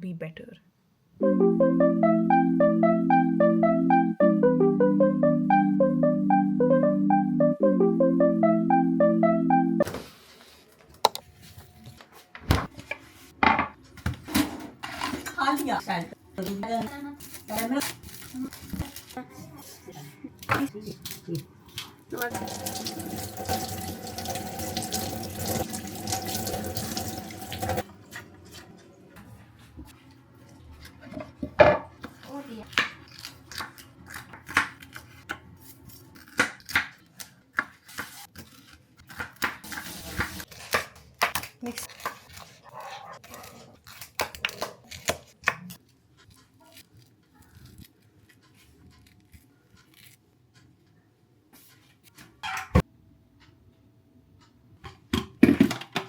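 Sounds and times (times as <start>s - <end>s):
tap water running into sink: 22.2s - 27.8s.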